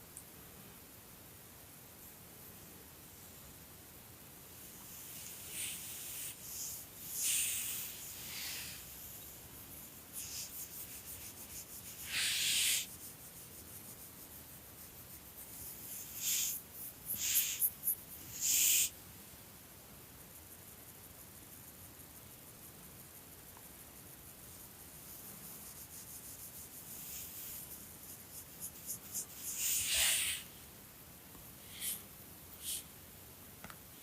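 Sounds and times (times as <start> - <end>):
soft rustling and rubbing: 4.5 - 18.6, 24.5 - 30.5.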